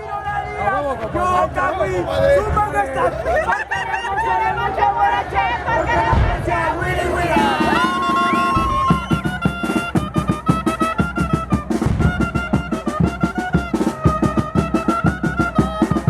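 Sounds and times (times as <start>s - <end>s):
brass horns playing: 5.7s - 16.0s
drums and cymbals beat: 5.7s - 16.0s.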